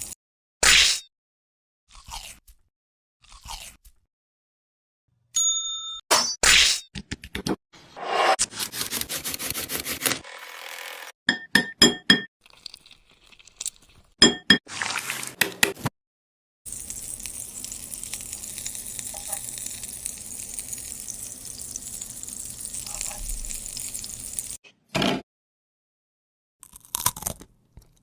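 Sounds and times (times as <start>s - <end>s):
scraping noise: 7.8s - 8.5s
food sizzling in hot oil: 16.7s - 24.6s.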